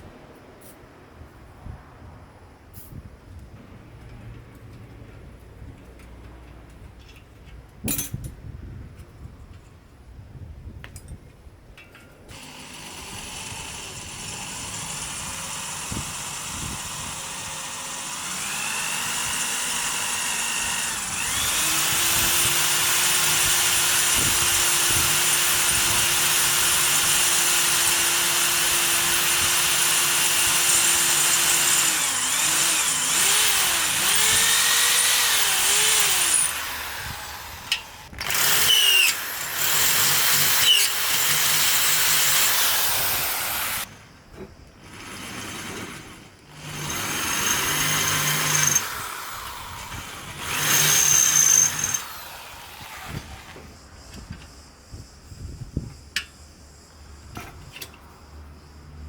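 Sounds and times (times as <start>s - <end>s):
electric drill drilling into metal: 12.3s - 43.9s, 45.3s - 53.6s.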